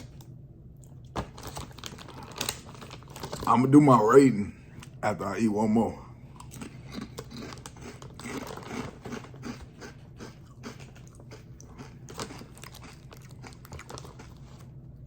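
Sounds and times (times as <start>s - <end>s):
crunching chips: 0.8s - 4.0s, 6.4s - 14.8s.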